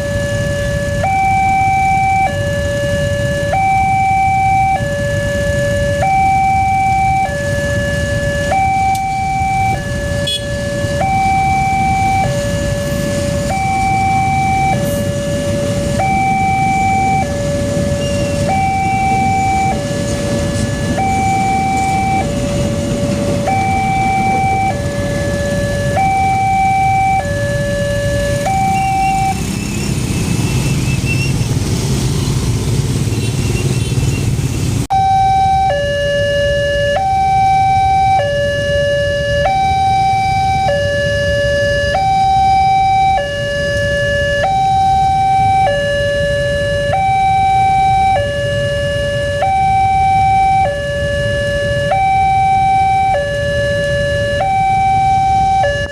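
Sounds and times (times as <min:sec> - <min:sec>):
two-tone crossing alarm: 0:00.0 - 0:31.4, 0:34.9 - 0:55.9.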